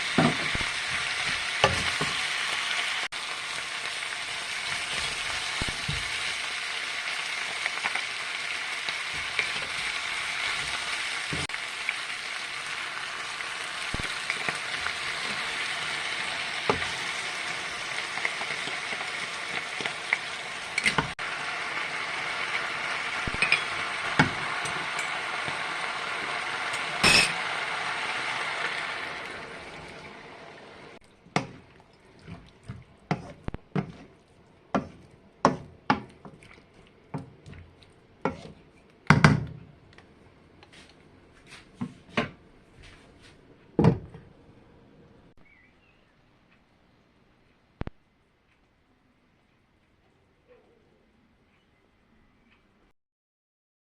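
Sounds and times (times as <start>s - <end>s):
food sizzling in a frying pan: 0.0s - 31.6s.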